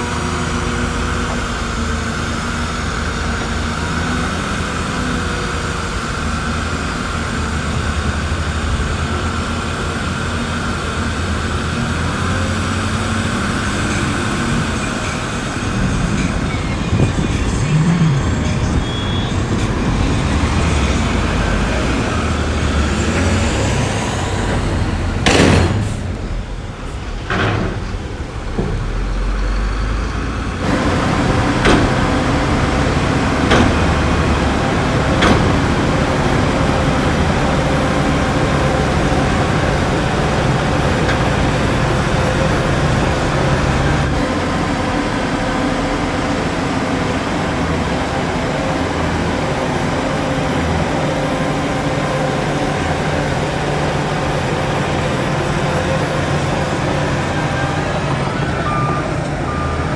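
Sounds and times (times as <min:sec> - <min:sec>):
diesel earthmoving machinery running: 0:00.0 - 0:59.9
sharp bangs: 0:22.7 - 0:28.9.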